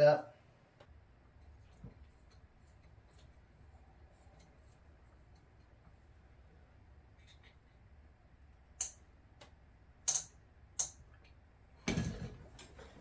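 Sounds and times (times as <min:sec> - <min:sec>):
sharp metallic clicks: 0:10.0 - 0:11.0.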